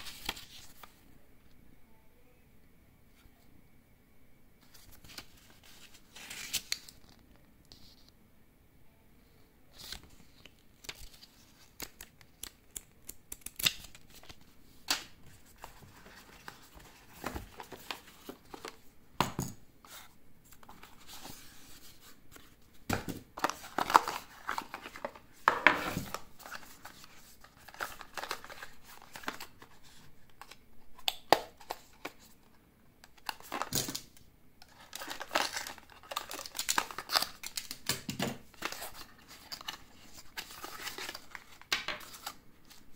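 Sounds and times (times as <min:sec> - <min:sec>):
packaging rustling and tearing: 0:23.4 - 0:30.6, 0:33.2 - 0:42.9.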